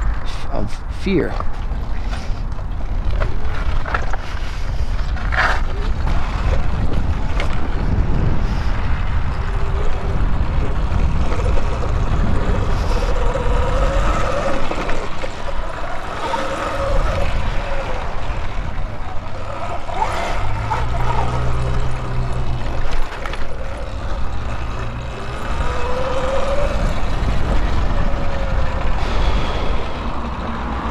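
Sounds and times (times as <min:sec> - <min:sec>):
wind rumble on microphone: 0:00.0 - 0:30.9.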